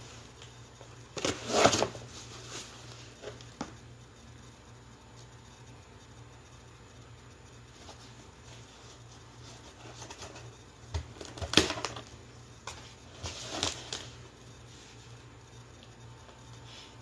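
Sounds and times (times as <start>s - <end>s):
box cutter scraping cardboard: 1.2s - 2.0s.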